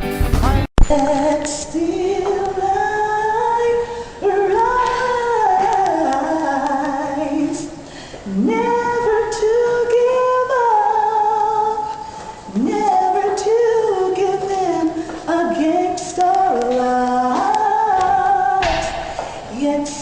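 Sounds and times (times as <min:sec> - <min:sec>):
woman singing gospel: 0:00.8 - 0:20.0.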